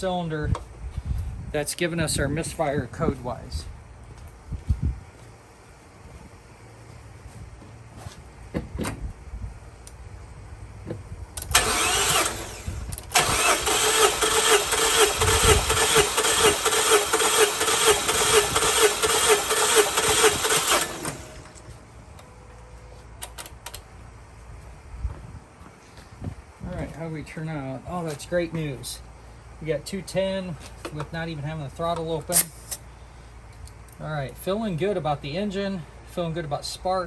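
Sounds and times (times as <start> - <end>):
starter cranking engine: 11.4 - 21.6.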